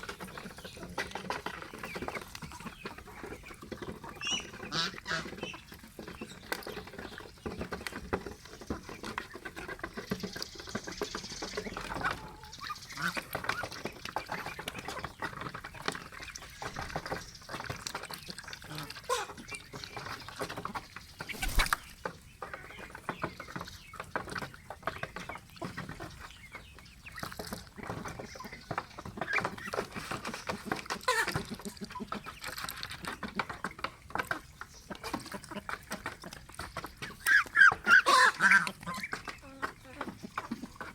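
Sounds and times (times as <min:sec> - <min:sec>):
ducks quacking: 0:00.0 - 0:06.2, 0:11.4 - 0:23.6, 0:34.2 - 0:40.9
geese honking: 0:37.2 - 0:39.2.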